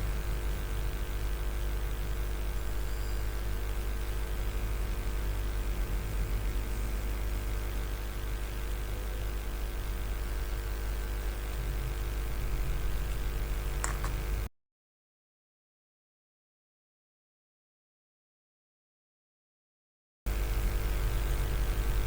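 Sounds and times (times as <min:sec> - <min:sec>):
low electrical hum: 0:00.0 - 0:14.5, 0:20.3 - 0:22.0.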